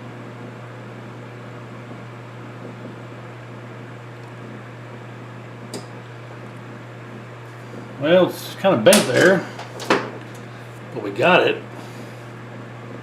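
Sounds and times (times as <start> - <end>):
low electrical hum: 0.0 - 13.0
fan-like hiss: 5.5 - 13.0.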